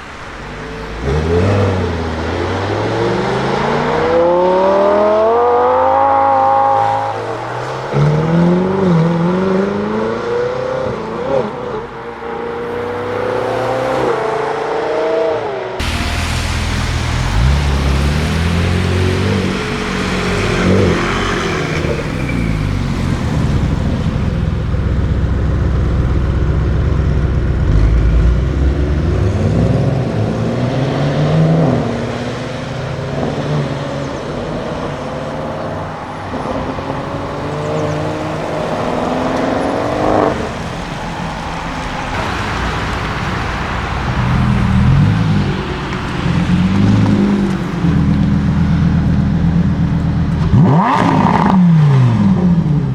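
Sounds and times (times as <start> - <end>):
car engine accelerating: 0.0 - 52.9.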